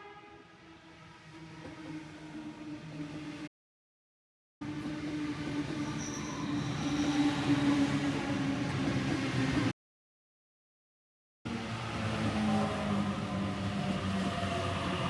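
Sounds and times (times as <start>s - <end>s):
train rumbling through station: 0.0s - 3.5s, 4.6s - 9.7s, 11.5s - 15.0s
high wheel squeal: 5.8s - 7.6s.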